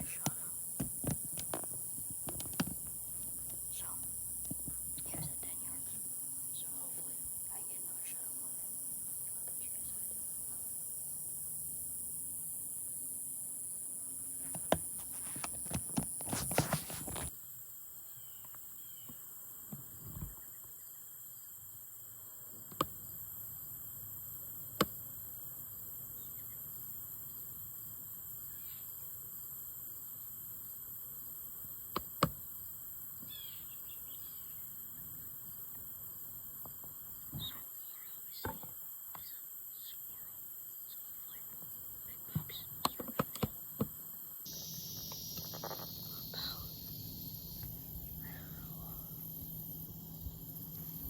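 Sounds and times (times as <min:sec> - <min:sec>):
clicks and rustles: 0:00.0 - 0:03.6, 0:14.4 - 0:17.3
bird chirp: 0:33.2 - 0:35.2, 0:37.3 - 0:43.1, 0:44.5 - 0:49.4
high-pitched insect drone: 0:44.5 - 0:51.0.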